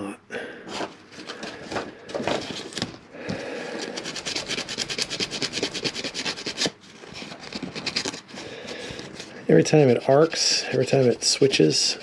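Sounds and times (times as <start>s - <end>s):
rasping scraping strokes: 3.7s - 12.0s.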